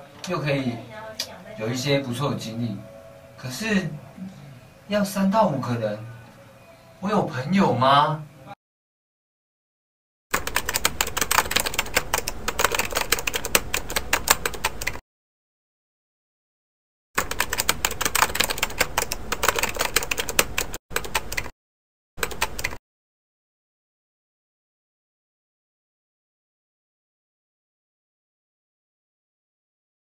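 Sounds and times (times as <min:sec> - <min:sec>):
clattering keystrokes: 0:10.3 - 0:15.0, 0:17.2 - 0:21.5, 0:22.2 - 0:22.8.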